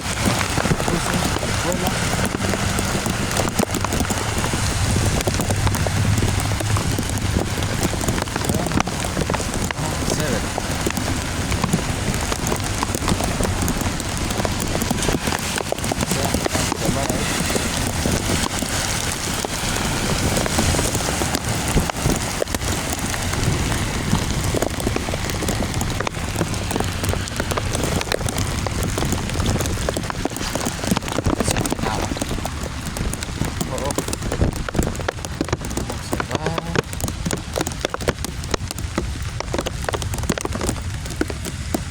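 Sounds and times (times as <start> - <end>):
steady low rumble: 0.0 - 15.2, 22.9 - 37.3
heavy rain pattering on hard surface: 0.0 - 41.9.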